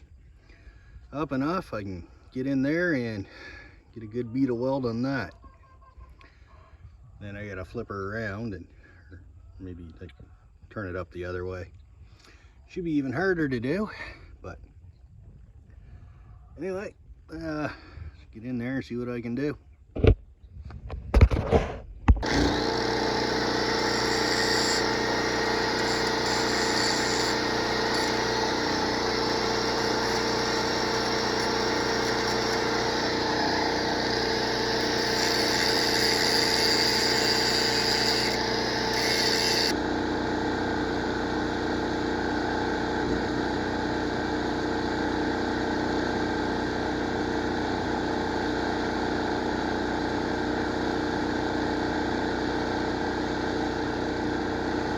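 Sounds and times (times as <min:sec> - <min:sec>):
engine hum: 0:22.2 - 0:54.9
welding arc crackling hiss: 0:22.4 - 0:39.7.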